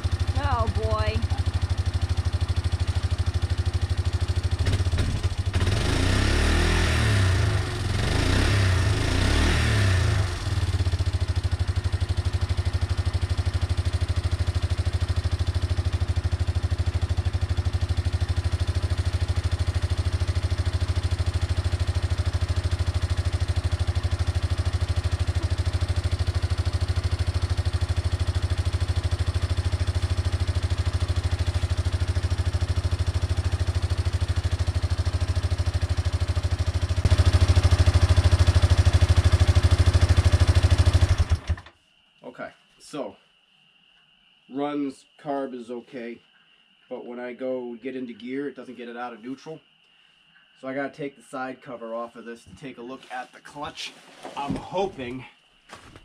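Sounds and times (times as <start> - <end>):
atv engine revving and idling: 0.0 - 41.7.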